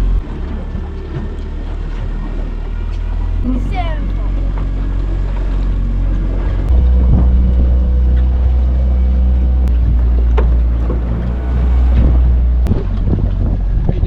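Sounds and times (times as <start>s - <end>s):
boat motor droning: 0.0s - 14.0s.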